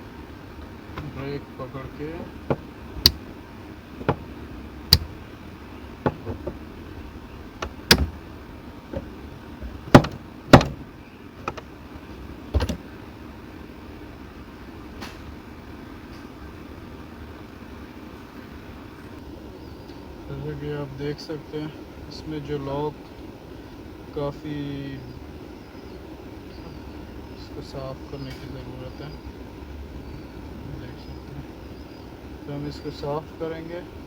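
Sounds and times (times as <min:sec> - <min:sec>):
low steady hum: 0:00.0 - 0:34.0
gear shifter clicks and clunks: 0:02.3 - 0:03.4, 0:04.0 - 0:05.3, 0:06.0 - 0:12.8.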